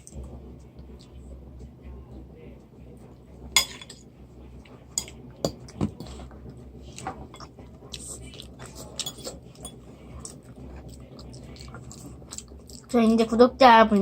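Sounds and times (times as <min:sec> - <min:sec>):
chewing and mouth noises: 0:07.4 - 0:13.3.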